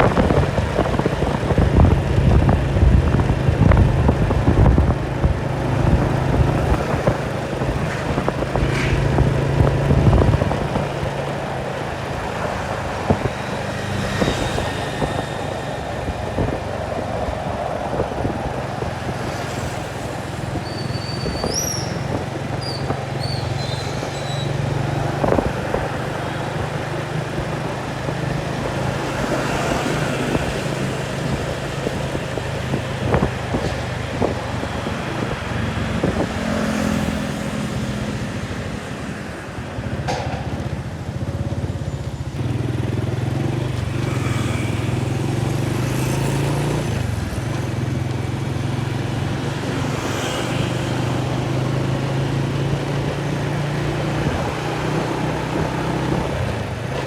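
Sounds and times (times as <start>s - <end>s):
engine running with low hum: 0.0s - 20.6s.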